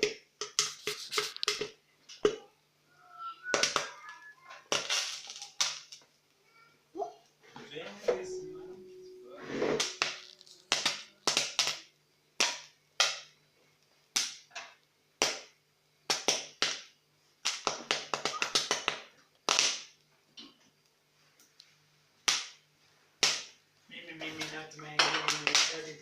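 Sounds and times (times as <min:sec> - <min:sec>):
popcorn popping in a pot: 0:00.0 - 0:02.5, 0:03.4 - 0:06.1, 0:09.8 - 0:13.4, 0:14.1 - 0:20.6, 0:23.2 - 0:23.6, 0:24.4 - 0:26.0.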